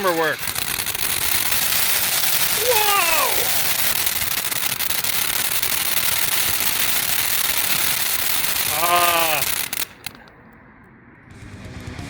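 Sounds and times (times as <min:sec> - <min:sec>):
firework crackles and pops: 0:00.0 - 0:10.4
person exclaiming: 0:02.5 - 0:03.9, 0:08.7 - 0:09.6.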